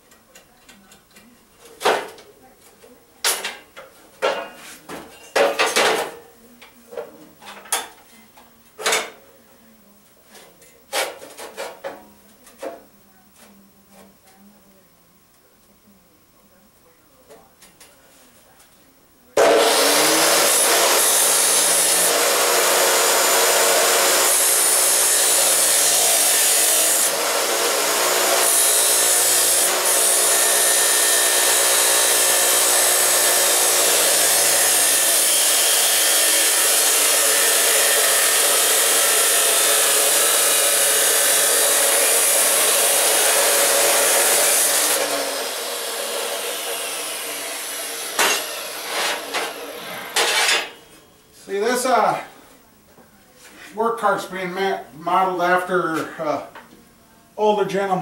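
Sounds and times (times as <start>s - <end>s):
cut-off wheel cutting steel: 19.4s - 50.8s.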